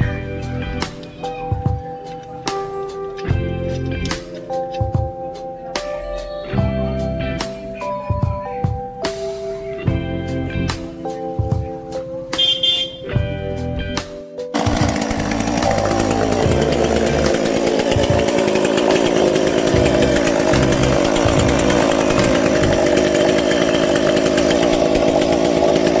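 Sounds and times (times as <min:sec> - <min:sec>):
chainsaw engine running: 0:00.0 - 0:05.3, 0:14.5 - 0:26.0
background music: 0:00.0 - 0:26.0.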